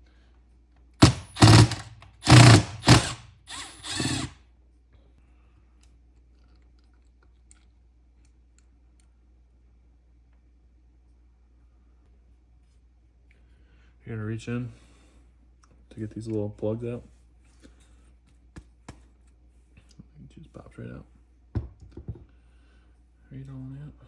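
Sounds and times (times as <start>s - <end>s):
power tool whirring bursts: 1.0s - 4.4s.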